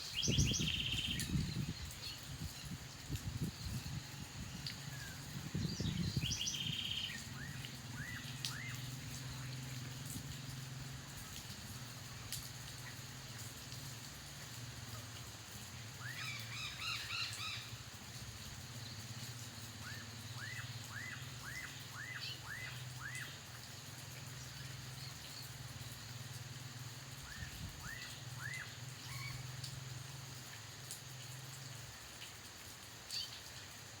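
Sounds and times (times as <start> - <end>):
bird chirps: 0.1 - 2.2, 4.9 - 8.8.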